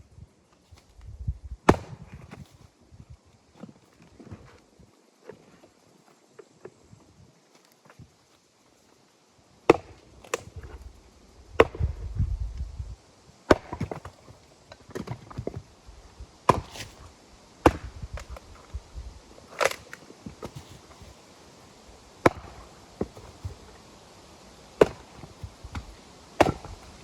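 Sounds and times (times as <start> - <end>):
firewood being chopped: 1.6 - 2.6, 9.7 - 10.8, 11.5 - 12.0, 13.5 - 15.7, 16.5 - 17.0, 17.6 - 18.5, 19.5 - 21.2, 22.2 - 23.8, 24.8 - 27.0.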